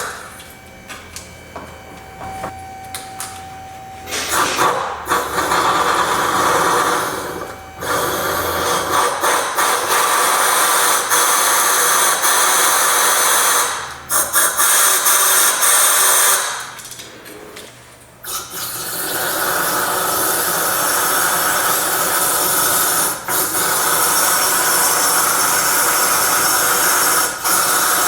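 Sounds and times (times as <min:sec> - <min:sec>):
power tool running: 0:00.0 - 0:16.7.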